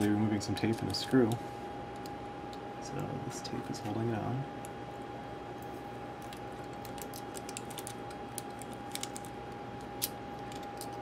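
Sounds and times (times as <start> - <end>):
tape peeling crackles: 6.2 - 11.0.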